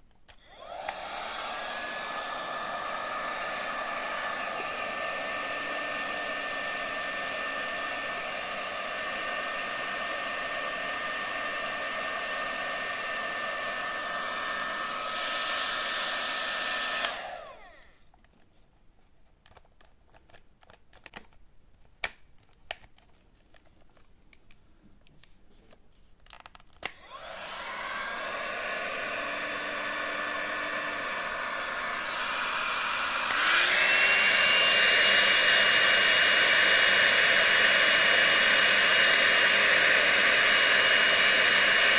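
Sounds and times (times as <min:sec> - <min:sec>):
hot-air brush blowing whine: 0:00.5 - 0:17.9, 0:26.9 - 0:41.9.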